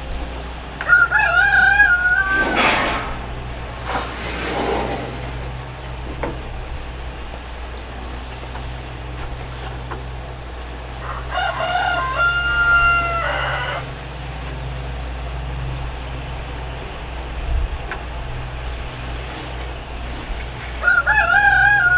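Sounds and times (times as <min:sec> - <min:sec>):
rooster crowing: 0:00.8 - 0:03.3, 0:10.9 - 0:14.2, 0:20.8 - 0:21.9.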